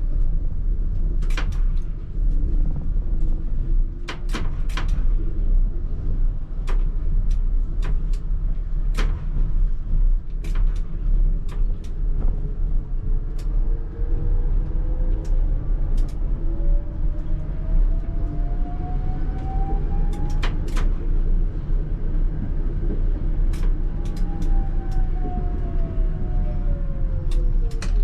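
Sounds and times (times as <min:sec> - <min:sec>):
tram wheels rumbling on rail: 0:00.0 - 0:28.0
electric drive whine rising: 0:13.9 - 0:28.0.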